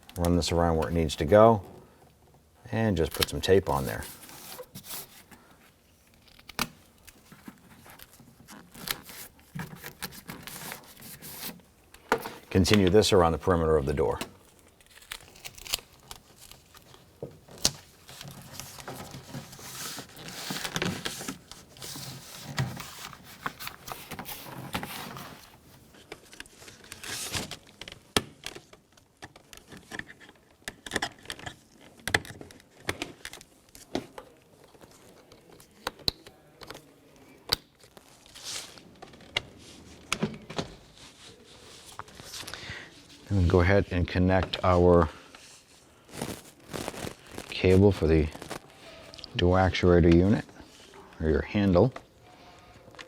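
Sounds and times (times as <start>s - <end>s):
tape crinkling and rustling: 0.0s - 53.0s
duct tape tearing: 7.8s - 11.6s, 14.2s - 25.6s, 46.1s - 47.6s, 48.3s - 48.8s.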